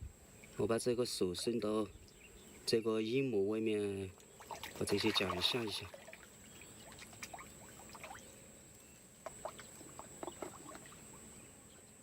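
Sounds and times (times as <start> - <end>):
water splashes and drips: 4.2 - 8.3, 9.2 - 11.2.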